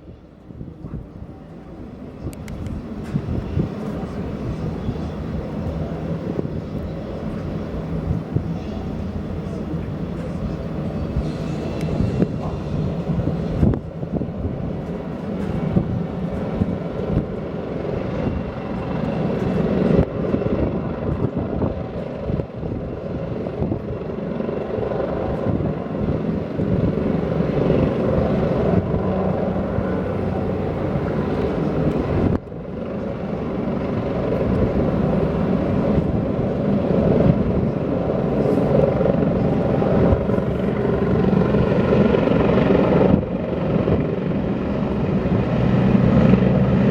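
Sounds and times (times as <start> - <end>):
helicopter rotor chopping: 1.8 - 46.9.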